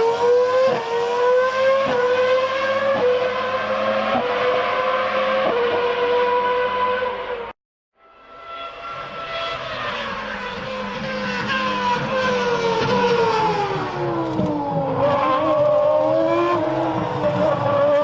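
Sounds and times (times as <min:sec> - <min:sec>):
go-kart engine: 0:00.0 - 0:18.0.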